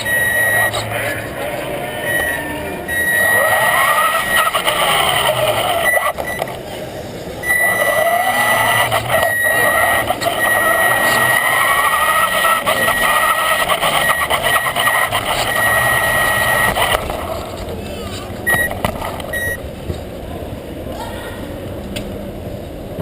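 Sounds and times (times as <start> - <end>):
background voices: 0.0 - 19.4
tyres rumbling: 0.0 - 23.0
toy truck electric motor whining: 2.0 - 6.6, 7.4 - 17.7.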